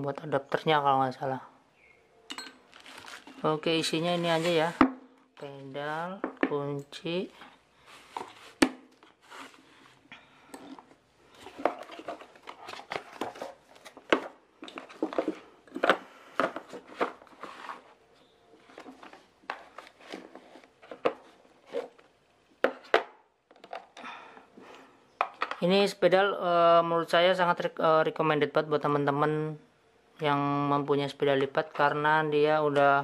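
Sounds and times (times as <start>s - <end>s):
packaging rustling: 2.7s - 4.8s, 11.3s - 22.2s.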